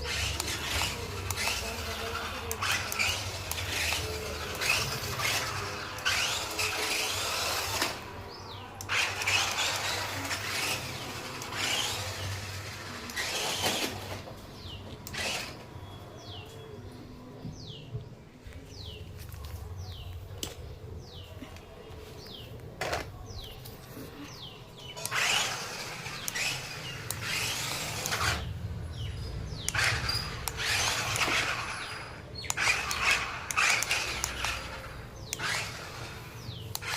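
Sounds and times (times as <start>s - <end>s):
toy car electric motor humming: 0.0s - 15.7s, 24.2s - 36.9s
rough bursts of motor and wheels: 0.0s - 16.5s, 22.3s - 36.9s.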